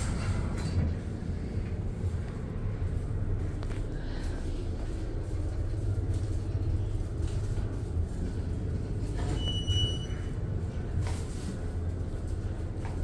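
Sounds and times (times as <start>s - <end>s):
low mechanical rumble: 0.0s - 9.2s.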